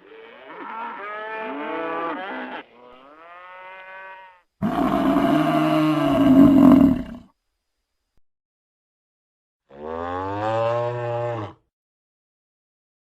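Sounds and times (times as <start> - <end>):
buffalo lowing: 4.6 - 7.3.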